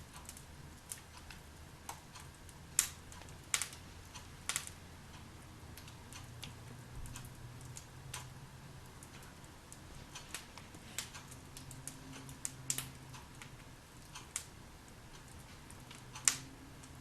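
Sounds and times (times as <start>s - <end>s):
wood fire crackling: 0.0s - 17.0s
sharp pops of burning logs: 2.7s - 3.8s, 4.4s - 4.8s, 15.7s - 16.5s.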